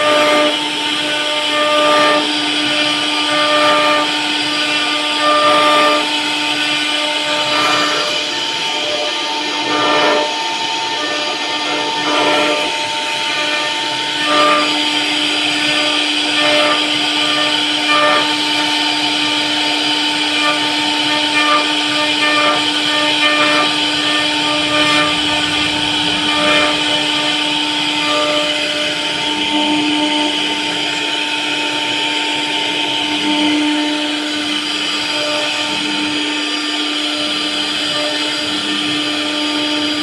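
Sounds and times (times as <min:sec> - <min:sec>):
bit rasping through wood: 0:00.0 - 0:32.0
router spindle whining: 0:00.0 - 0:40.0.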